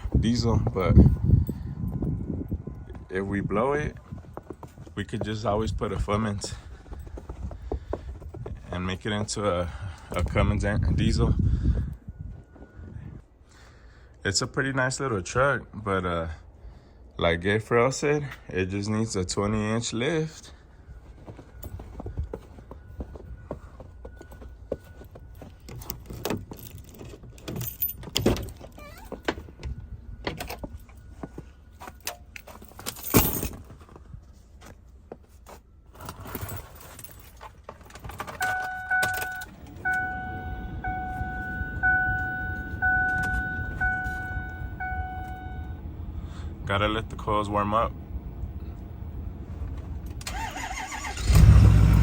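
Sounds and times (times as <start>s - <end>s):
truck warning chime pinging: 19.4s - 32.7s, 38.2s - 48.2s
keys jangling: 25.4s - 29.4s, 31.9s - 33.8s, 35.9s - 39.5s.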